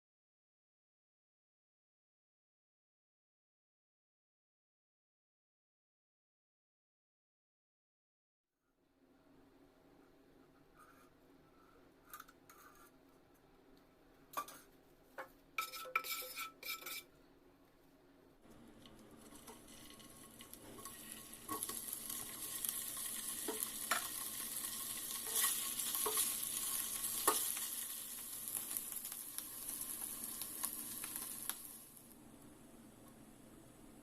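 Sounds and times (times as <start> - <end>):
spatula scraping a pan: 10.6 - 13.0, 14.4 - 17.2, 18.8 - 29.1
food sizzling in a pan: 18.7 - 32.2
spatula tapping a pan: 23.4 - 24.2, 25.3 - 27.7.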